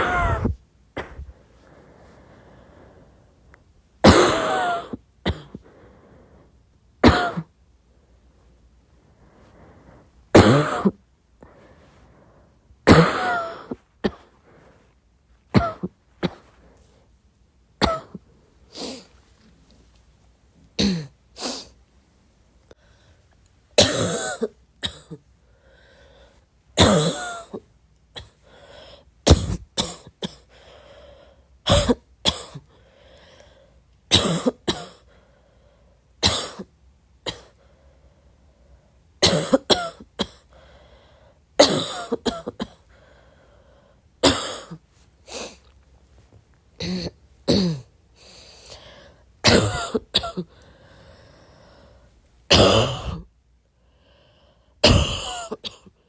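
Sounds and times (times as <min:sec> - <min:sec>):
person coughing: 0:00.0 - 0:01.3, 0:04.0 - 0:05.6, 0:07.0 - 0:07.5, 0:10.3 - 0:11.0, 0:12.8 - 0:14.4, 0:15.5 - 0:16.6, 0:17.8 - 0:18.2, 0:20.8 - 0:21.7, 0:23.8 - 0:25.2, 0:26.8 - 0:28.4, 0:29.3 - 0:30.5, 0:31.7 - 0:32.7, 0:34.1 - 0:35.1, 0:36.2 - 0:36.7, 0:37.3 - 0:37.6, 0:39.2 - 0:40.5, 0:41.6 - 0:42.9, 0:44.2 - 0:45.6, 0:46.8 - 0:47.9, 0:48.7 - 0:50.6, 0:52.5 - 0:53.3, 0:54.8 - 0:56.0
throat clearing: 0:00.0 - 0:01.3.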